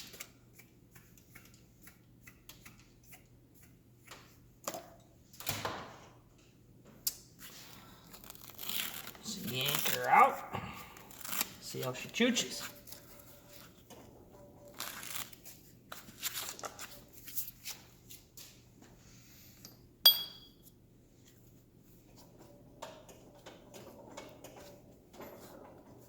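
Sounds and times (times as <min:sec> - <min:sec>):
sharp metallic clink: 0:20.0 - 0:20.6.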